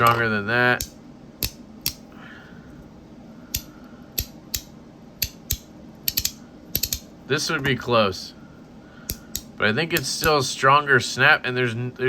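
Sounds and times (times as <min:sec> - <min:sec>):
magnetic fidget clicks: 0:03.5 - 0:07.0.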